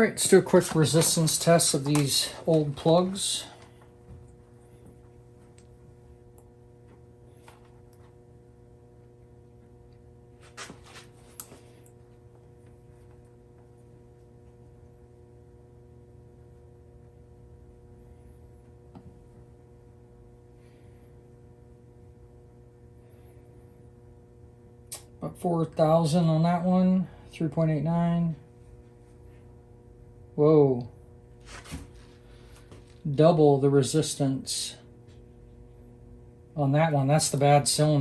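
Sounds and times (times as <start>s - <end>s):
low room hum: 0.0s - 38.0s.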